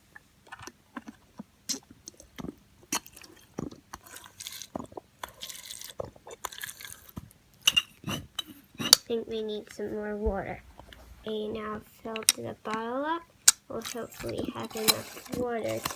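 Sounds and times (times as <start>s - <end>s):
plastic squeeze bottle squirting: 13.5s - 15.9s.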